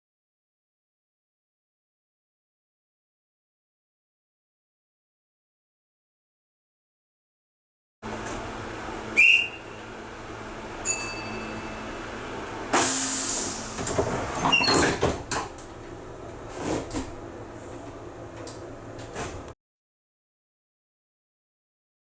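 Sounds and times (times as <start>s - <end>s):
standing train hum: 8.0s - 19.5s
short whistle: 9.2s - 9.8s
train doors thudding shut: 12.7s - 17.2s, 17.8s - 19.5s
air hiss: 12.8s - 14.0s.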